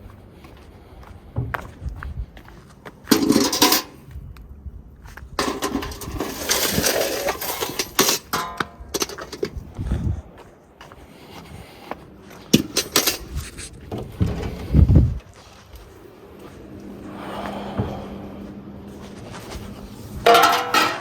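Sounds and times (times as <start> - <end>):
metal tools scraping ash: 5.4 - 9.4.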